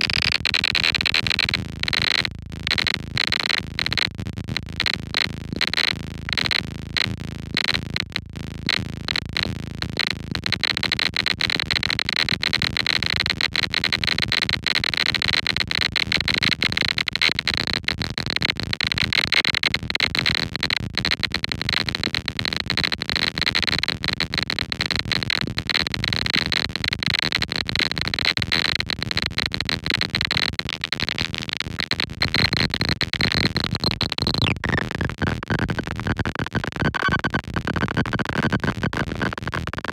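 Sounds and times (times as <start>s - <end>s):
stuttering noisy synthesizer: 33.3s - 39.9s
high synthesizer tone: 36.3s - 39.4s.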